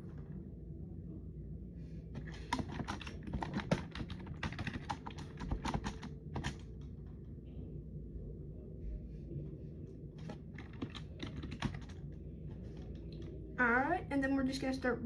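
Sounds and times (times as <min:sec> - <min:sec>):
low background hum: 0:00.0 - 0:15.0
computer keyboard typing: 0:02.2 - 0:06.9, 0:10.2 - 0:13.4.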